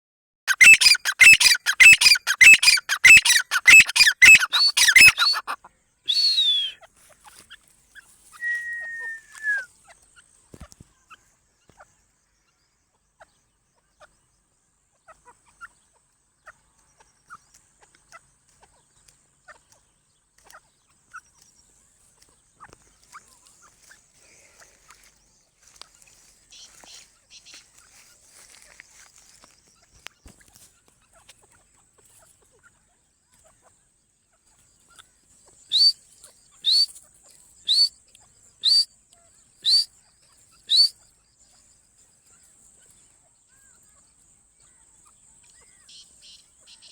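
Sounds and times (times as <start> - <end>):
francolin calling: 0.5 - 9.7, 35.0 - 41.0
whistled falling note: 6.1 - 6.8, 8.4 - 9.7
faint ticks: 16.7 - 32.2.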